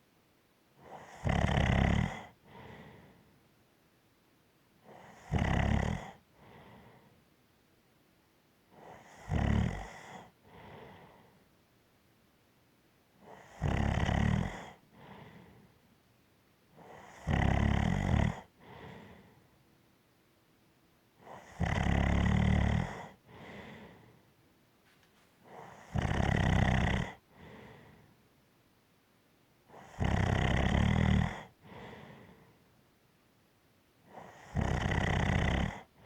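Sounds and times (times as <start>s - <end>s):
loud snores: 0.8s - 2.8s, 4.9s - 6.2s, 8.8s - 11.0s, 13.2s - 15.1s, 16.8s - 18.5s, 21.2s - 23.7s, 25.5s - 27.6s, 29.7s - 32.0s, 34.1s - 36.0s
soft breath: 2.4s - 3.4s, 6.3s - 7.3s, 10.1s - 11.6s, 14.7s - 15.9s, 18.5s - 19.6s, 22.9s - 25.9s, 27.1s - 28.3s, 31.4s - 32.7s.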